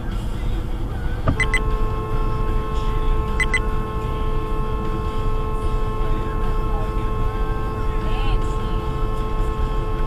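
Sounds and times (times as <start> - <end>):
car road noise: 0.0 - 10.0
short double beep: 1.3 - 1.6, 3.4 - 3.7
car horn long honk: 1.3 - 10.0.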